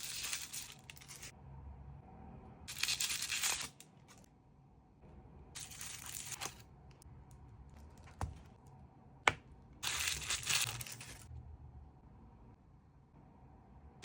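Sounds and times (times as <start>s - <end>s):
plastic wrap crinkling and tearing: 9.8s - 11.3s.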